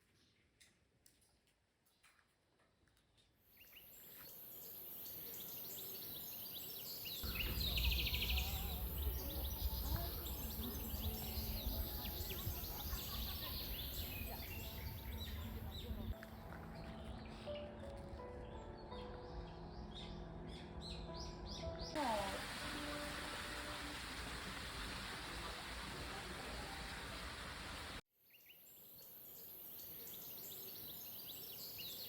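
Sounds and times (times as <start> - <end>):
birds chirping: 3.6 - 17.8
steady high hiss: 4.0 - 16.0, 22.0 - 28.0
low rumble: 7.2 - 16.2.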